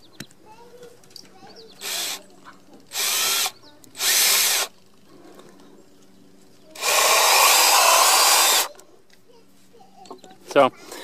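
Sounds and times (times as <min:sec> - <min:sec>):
cordless drill driving screw into wood: 0:01.8 - 0:02.2, 0:02.9 - 0:04.7, 0:06.8 - 0:08.7.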